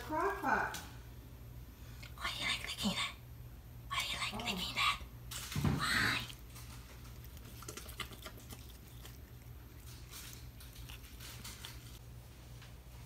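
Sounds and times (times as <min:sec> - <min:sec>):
low steady hum: 0:00.0 - 0:13.0
pet licking: 0:05.8 - 0:12.0.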